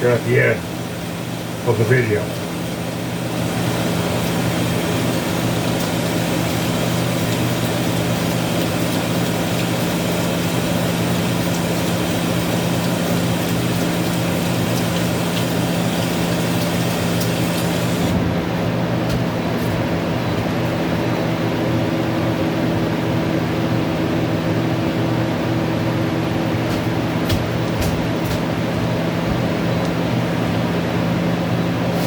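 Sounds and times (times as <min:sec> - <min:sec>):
kitchen fan humming: 0:00.0 - 0:32.0
eggs frying crackles: 0:02.6 - 0:18.1.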